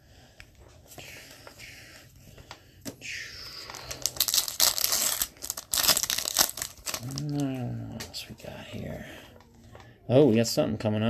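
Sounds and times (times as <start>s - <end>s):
card pack wrapper crinkling: 3.5s - 8.1s.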